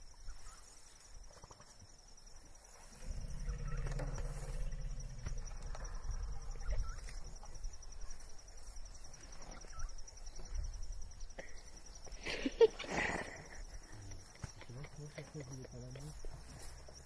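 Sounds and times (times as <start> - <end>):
insect chirping: 0.0 - 17.0
low rumble: 3.0 - 7.8.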